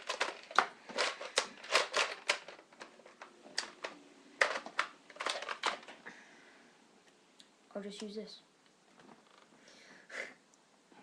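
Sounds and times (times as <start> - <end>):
small objects clicking and knocking: 0.0 - 6.0.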